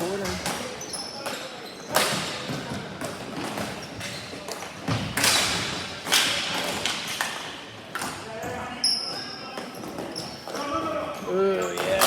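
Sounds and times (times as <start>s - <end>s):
hockey sticks and ball thuds: 0.1s - 8.3s.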